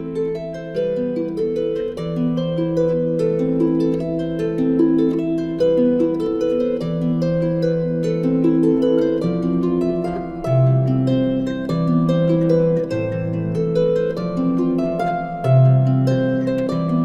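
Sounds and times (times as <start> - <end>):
harp-like plucked melody: 0.0 - 17.0.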